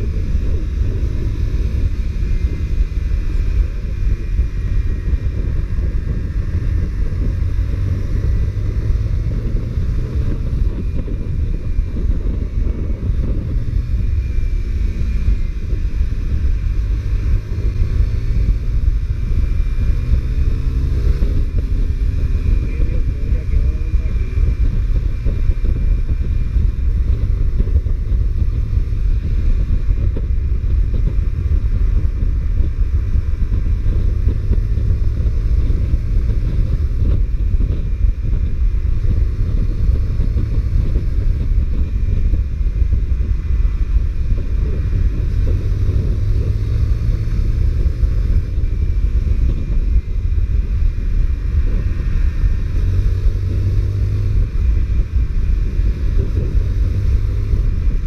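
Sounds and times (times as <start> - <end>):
motorcycle engine running: 0.0 - 58.0
wind rush on microphone: 0.0 - 58.0.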